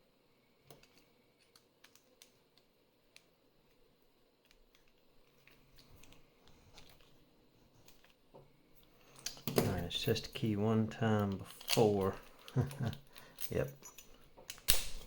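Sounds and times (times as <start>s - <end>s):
metal padlock parts clicking: 11.2s - 15.0s.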